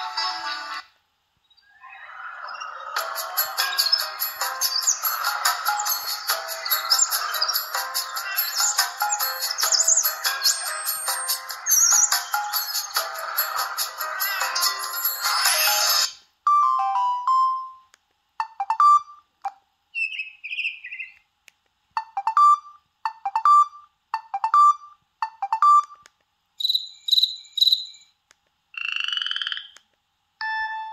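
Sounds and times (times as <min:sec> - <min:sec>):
electronic ringtone tones: 0:02.5 - 0:19.2, 0:22.0 - 0:26.0, 0:30.4 - 0:30.9
buzzing trill: 0:03.0 - 0:16.1.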